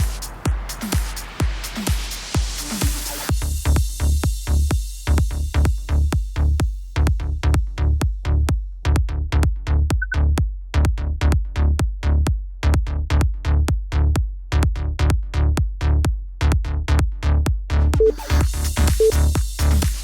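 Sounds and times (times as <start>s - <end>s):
electronic dance music: 0.0s - 3.3s, 18.0s - 20.0s.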